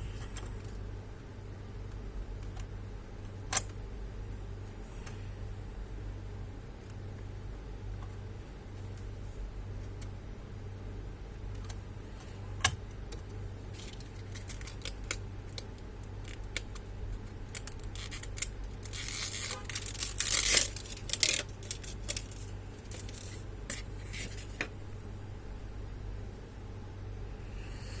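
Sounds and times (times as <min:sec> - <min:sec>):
steady low hum: 0:00.0 - 0:28.0
scraping tearing noise: 0:17.6 - 0:23.4.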